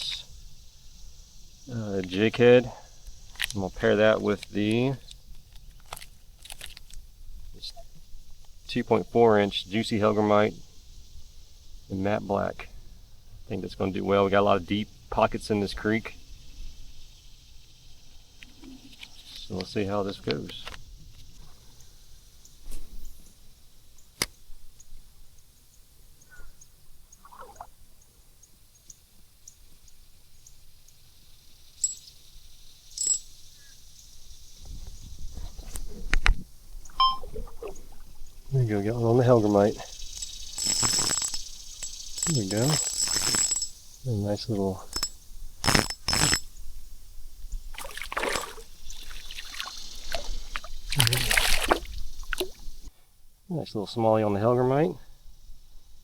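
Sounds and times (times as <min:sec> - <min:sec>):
creek water splashing: 0:27.2 - 0:27.8, 0:37.0 - 0:43.5, 0:47.7 - 0:52.9
fishing reel ticking: 0:33.0 - 0:33.2, 0:39.1 - 0:43.8, 0:44.9 - 0:46.5
short chirps: 0:37.0 - 0:37.3
sharp reel clicks: 0:40.0 - 0:43.8, 0:44.9 - 0:46.5.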